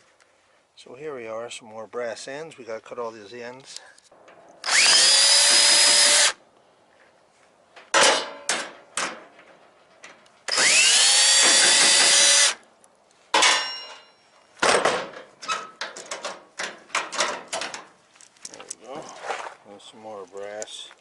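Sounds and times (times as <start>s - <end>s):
power tool whining: 4.6s - 6.4s, 10.5s - 12.6s
metal knocks and clatters: 13.3s - 17.9s.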